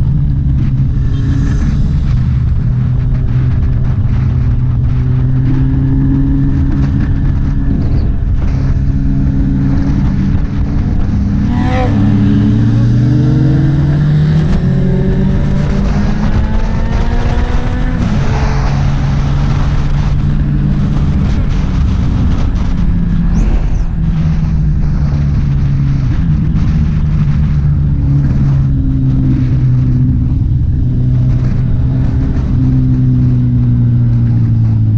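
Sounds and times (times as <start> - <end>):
motorcycle engine running: 0.0 - 34.9
wind rumble: 0.0 - 34.9
rising and falling sweep: 5.2 - 25.0.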